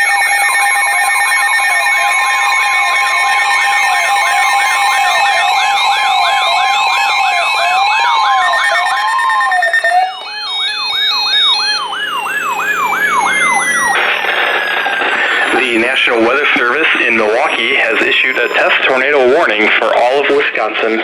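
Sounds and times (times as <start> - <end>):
wailing siren: 0.0 - 20.2
rising siren sweep: 3.2 - 19.8
stepped beeping: 4.3 - 20.6
steady alert tone: 10.2 - 19.4.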